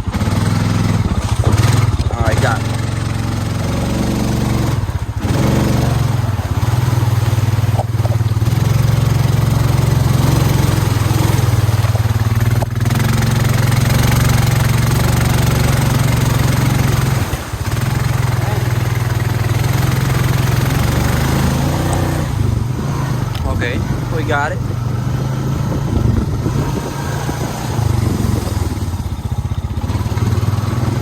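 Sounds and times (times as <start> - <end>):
atv engine running: 0.0 - 31.0.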